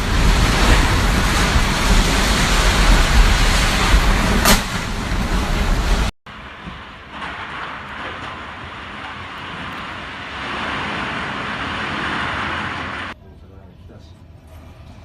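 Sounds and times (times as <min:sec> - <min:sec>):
strong wind buffeting microphone: 0:00.0 - 0:13.2
sharp knock: 0:04.4 - 0:04.8.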